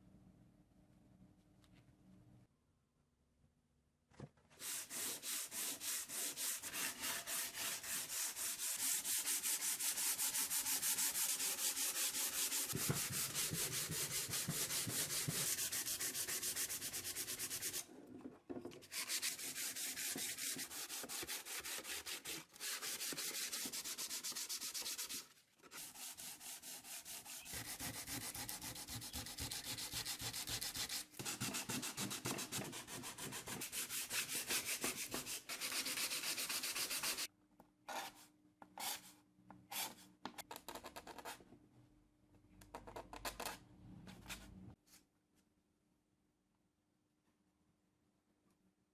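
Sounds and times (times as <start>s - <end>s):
wood being sanded: 4.6s - 17.8s.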